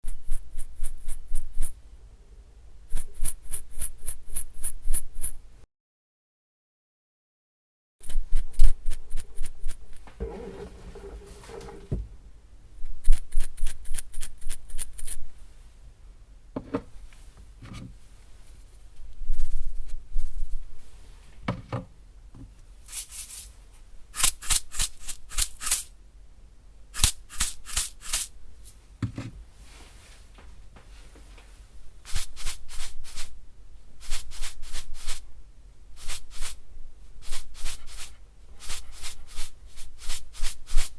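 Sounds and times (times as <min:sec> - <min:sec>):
salt shaker rattling: 0:22.9 - 0:23.6, 0:24.2 - 0:25.9, 0:27.0 - 0:28.3, 0:32.1 - 0:33.3, 0:34.0 - 0:35.2, 0:36.0 - 0:36.6, 0:37.2 - 0:40.9.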